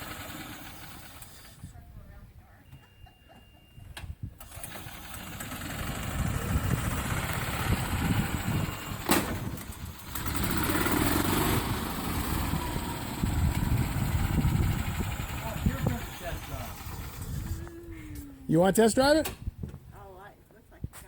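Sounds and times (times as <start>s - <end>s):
utility cart engine running: 0.0s - 1.8s, 4.3s - 17.9s.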